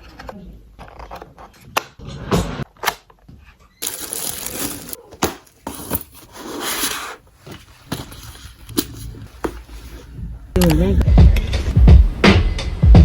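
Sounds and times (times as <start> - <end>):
packaging tearing and crinkling: 3.8 - 5.0.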